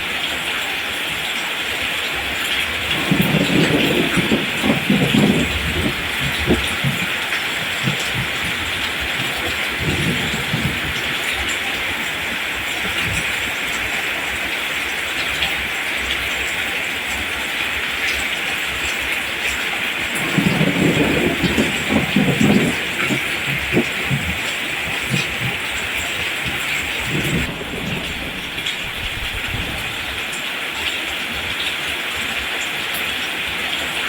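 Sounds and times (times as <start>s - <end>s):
rain falling on plants: 0.0s - 34.0s
low rumbles: 20.2s - 30.2s.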